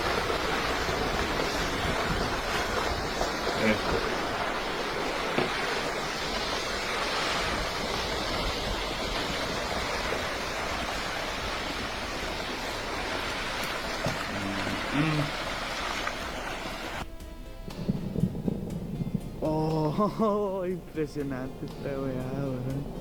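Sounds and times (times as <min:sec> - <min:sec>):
landslide rushing: 0:00.0 - 0:23.0.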